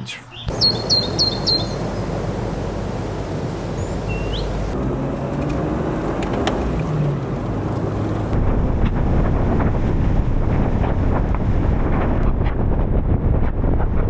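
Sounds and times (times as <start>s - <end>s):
vehicle engine humming: 0.5s - 8.4s
road noise: 0.5s - 8.6s
wind buffeting microphone: 0.5s - 14.0s.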